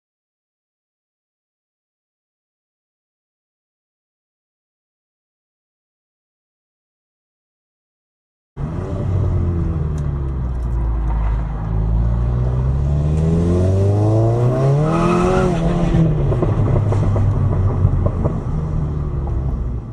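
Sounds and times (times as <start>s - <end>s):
car engine revving: 8.6s - 19.9s.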